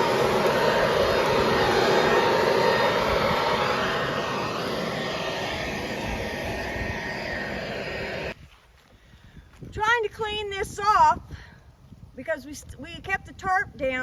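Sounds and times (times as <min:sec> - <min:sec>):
leaf blower running: 0:00.0 - 0:08.4.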